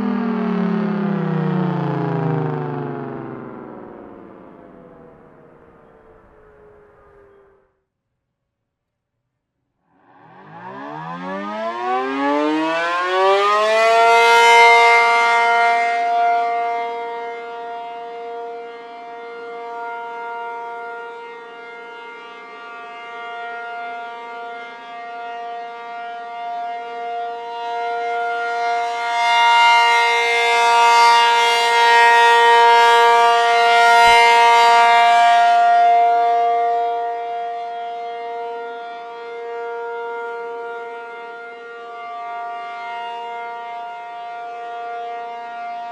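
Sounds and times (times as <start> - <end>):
warning siren winding up: 0.0 - 7.6, 10.1 - 18.2.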